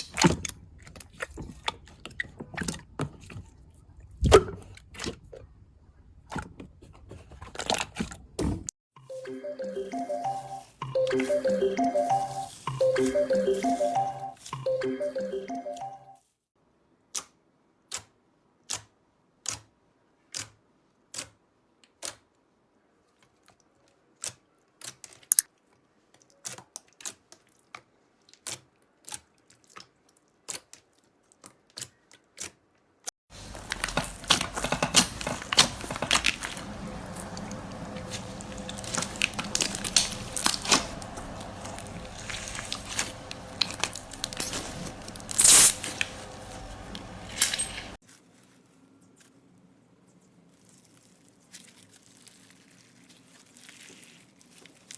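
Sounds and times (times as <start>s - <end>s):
slime crunchy crackling: 33.4s - 47.2s.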